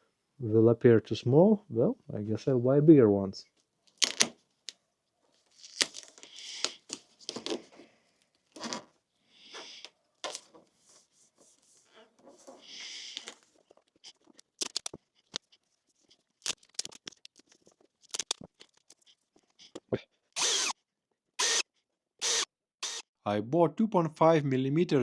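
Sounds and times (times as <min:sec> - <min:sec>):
duct tape pulled and torn: 0:03.9 - 0:04.4, 0:05.5 - 0:07.7, 0:14.6 - 0:15.0, 0:16.4 - 0:17.4, 0:18.0 - 0:18.8.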